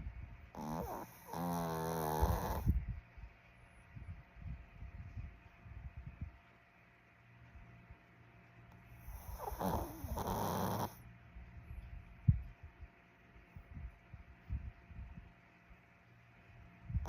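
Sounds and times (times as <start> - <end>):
puppy snoring: 0.5 - 2.8, 8.9 - 11.0.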